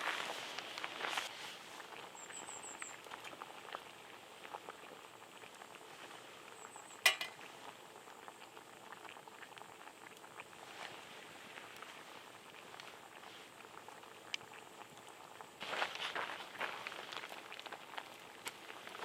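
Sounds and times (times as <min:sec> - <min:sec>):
broth bubbling in a pot: 0:00.0 - 0:19.0
sharp clink: 0:07.1 - 0:07.4.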